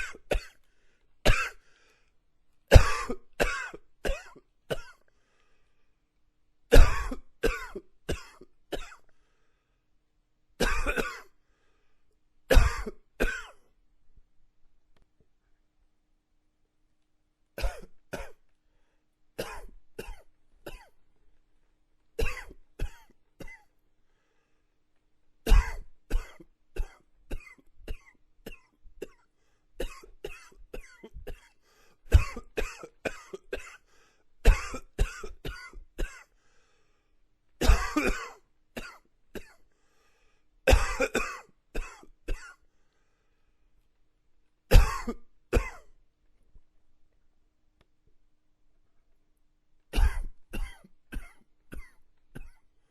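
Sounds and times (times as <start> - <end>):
man coughing: 0.0 - 0.6, 1.3 - 1.6, 2.7 - 5.0, 6.7 - 9.0, 10.6 - 11.4, 12.5 - 13.6, 22.2 - 23.7, 25.5 - 29.2, 32.1 - 33.8, 34.5 - 36.3, 37.6 - 39.6, 40.7 - 42.6, 44.7 - 45.9, 50.0 - 52.6.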